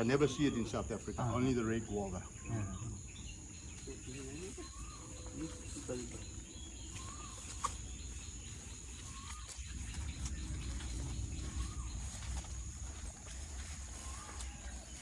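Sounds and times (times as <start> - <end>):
bird call rising and falling: 2.3 - 15.0
low rumble: 8.4 - 15.0.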